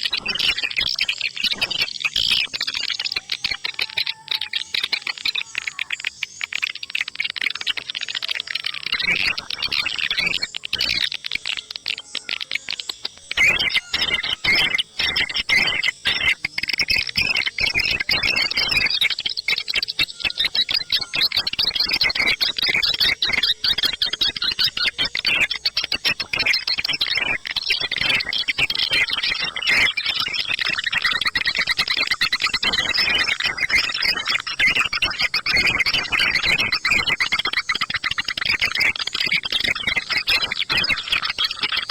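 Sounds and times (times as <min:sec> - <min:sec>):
swiftlets chirping and twittering: 0:00.0 - 0:41.9.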